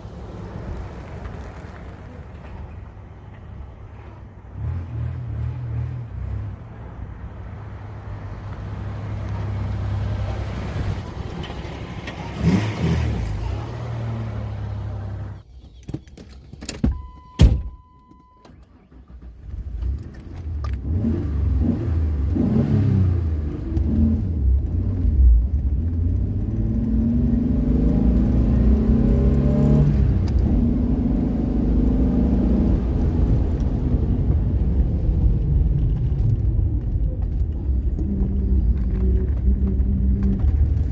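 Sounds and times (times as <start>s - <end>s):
car engine idling and revving: 0.0s - 15.8s, 16.9s - 40.9s
short beep: 16.9s - 18.6s.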